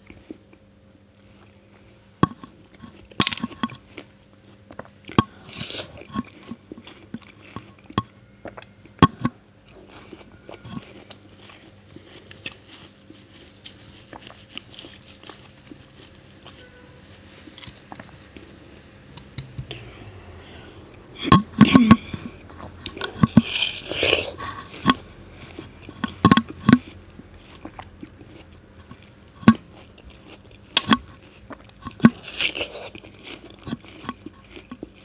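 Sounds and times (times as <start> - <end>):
chewing: 0.0 - 35.0
biting into watermelon: 2.2 - 35.0.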